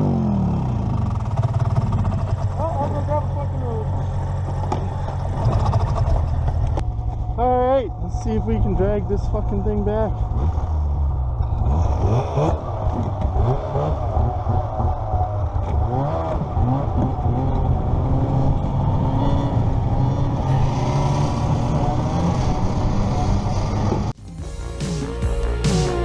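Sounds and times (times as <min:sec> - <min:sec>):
snowmobile engine revving: 0:00.0 - 0:06.7, 0:08.2 - 0:26.0
music: 0:24.2 - 0:26.0.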